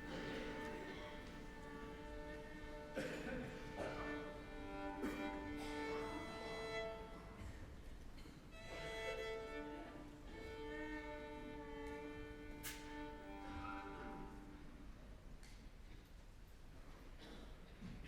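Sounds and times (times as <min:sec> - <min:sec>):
audience member coughing: 0:00.0 - 0:01.5, 0:02.9 - 0:04.3, 0:05.0 - 0:06.0, 0:17.2 - 0:17.9
violin playing slow notes: 0:08.6 - 0:14.8.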